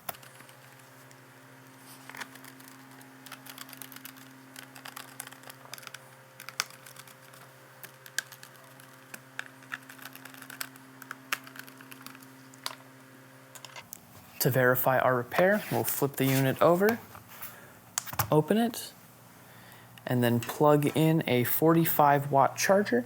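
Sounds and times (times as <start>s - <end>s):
faint steady hum: 0.0s - 23.0s.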